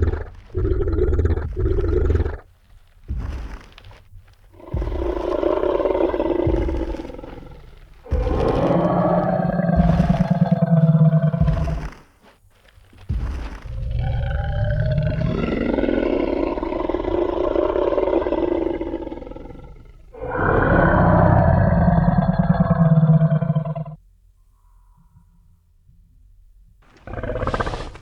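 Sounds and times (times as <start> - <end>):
dinosaur roars: 4.6 - 12.0, 13.6 - 24.0, 26.9 - 28.0.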